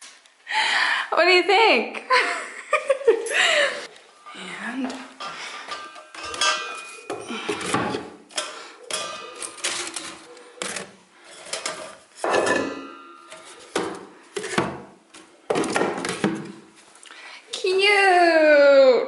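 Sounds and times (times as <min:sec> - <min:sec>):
toy kitchen doors clicking and knocking: 0:05.8 - 0:14.9.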